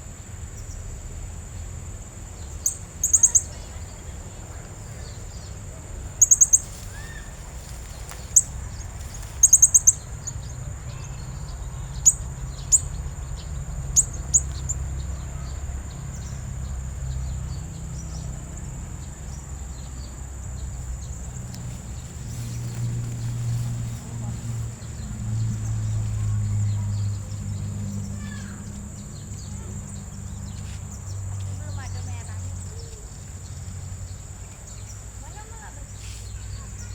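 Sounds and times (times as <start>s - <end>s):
parrot chirping: 2.5s - 4.0s, 6.0s - 10.4s.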